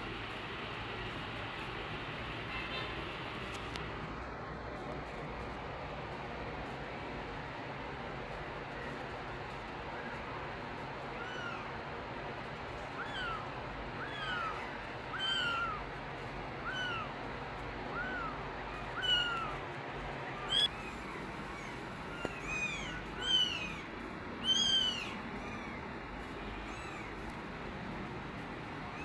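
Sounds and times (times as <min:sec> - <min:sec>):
kittens mewing: 0:12.8 - 0:27.4.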